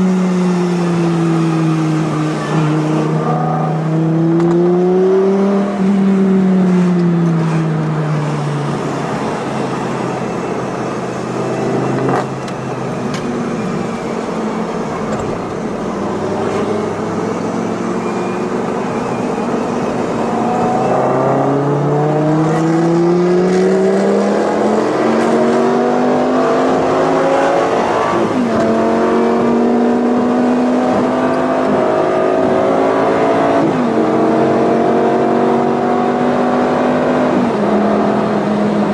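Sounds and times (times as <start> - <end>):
sports car engines revving: 0.0 - 38.9.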